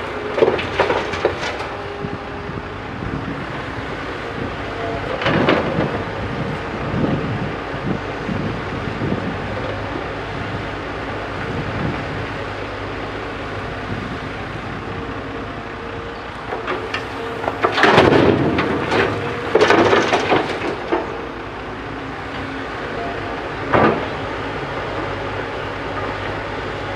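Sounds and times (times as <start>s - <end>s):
diesel engine running: 0.0s - 26.9s
rumbling clattering surges: 16.3s - 22.9s.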